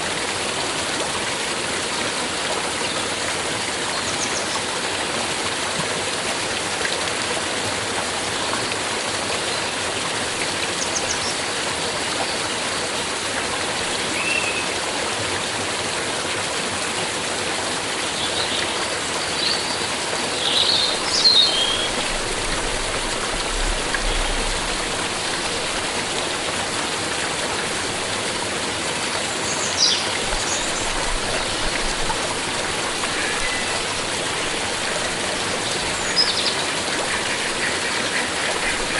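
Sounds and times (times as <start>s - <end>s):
stream rushing water: 0.0s - 38.9s
birds chirping: 19.2s - 22.1s, 29.5s - 31.9s, 35.7s - 37.7s.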